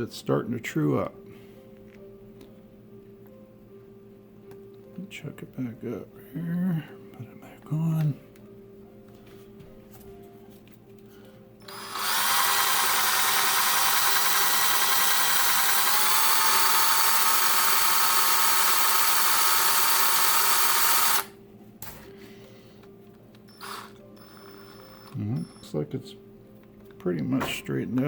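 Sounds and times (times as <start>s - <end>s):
power drill whining: 11.6s - 21.3s, 23.5s - 25.8s.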